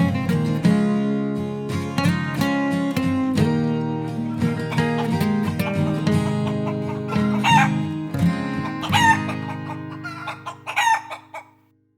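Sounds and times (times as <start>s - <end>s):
acoustic guitar music: 0.0s - 11.8s
chicken calling: 4.3s - 11.6s.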